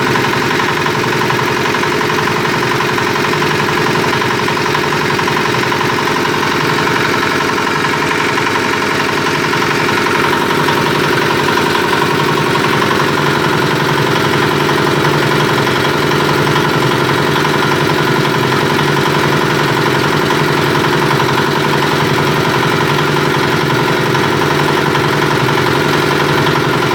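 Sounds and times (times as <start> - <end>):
mixer machine humming: 0.0 - 26.9.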